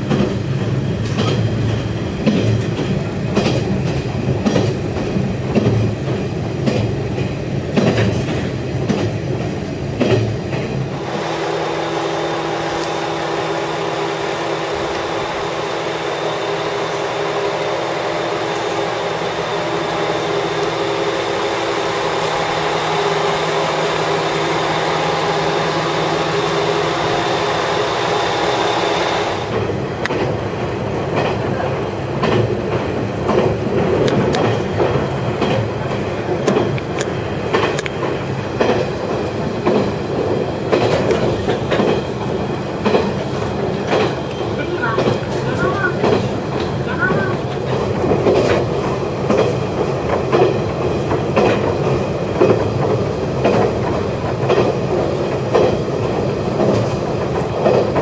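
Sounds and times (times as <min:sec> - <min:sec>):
diesel train engine drone: 0:00.0 - 0:58.0
wheels clattering over track: 0:29.4 - 0:58.0.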